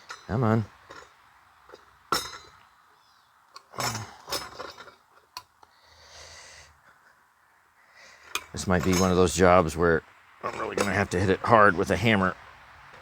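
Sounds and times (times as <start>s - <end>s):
metal tools clinking: 0.0s - 2.6s, 3.6s - 5.5s, 8.3s - 9.3s, 10.4s - 11.3s.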